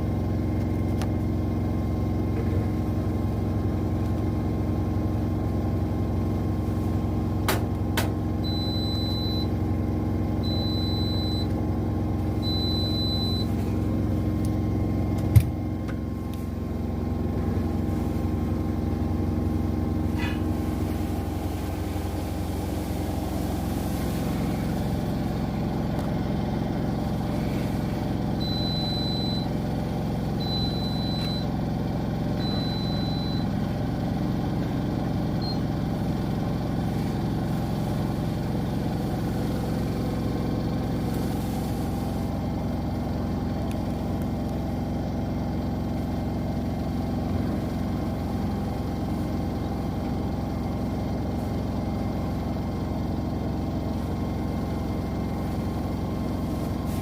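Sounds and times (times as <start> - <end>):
washing machines spinning hum: 0.0 - 57.0
short high beeps: 10.5 - 11.5, 12.4 - 13.6.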